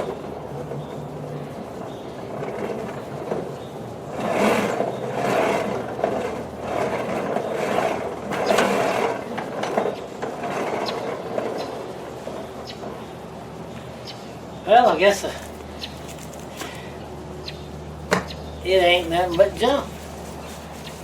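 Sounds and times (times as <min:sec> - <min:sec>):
hose reel gears rattling: 0:15.3 - 0:16.9, 0:18.7 - 0:21.0.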